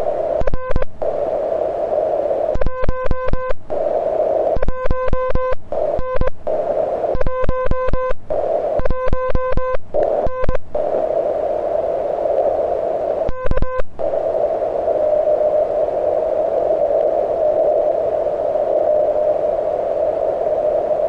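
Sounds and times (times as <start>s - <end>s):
morse code tones: 0.0s - 1.2s, 2.6s - 3.9s, 4.6s - 10.9s, 13.3s - 14.2s
radio band noise hiss: 0.0s - 21.0s.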